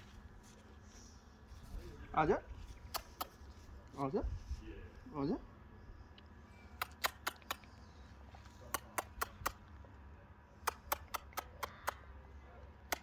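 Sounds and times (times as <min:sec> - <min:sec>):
sharp clicks: 0:02.9 - 0:03.4, 0:06.7 - 0:07.8, 0:08.7 - 0:09.7, 0:10.6 - 0:12.0.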